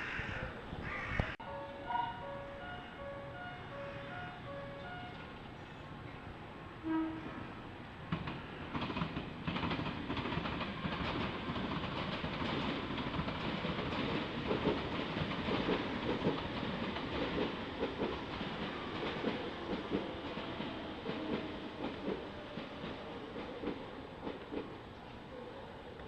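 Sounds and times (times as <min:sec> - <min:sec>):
train wheels rumbling: 0:06.8 - 0:25.1
wheels clacking over rail joints: 0:08.1 - 0:24.8.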